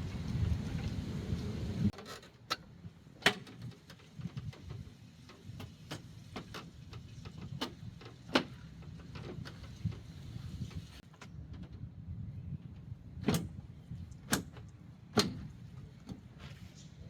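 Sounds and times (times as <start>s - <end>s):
rustle of handling: 15.6s - 17.0s.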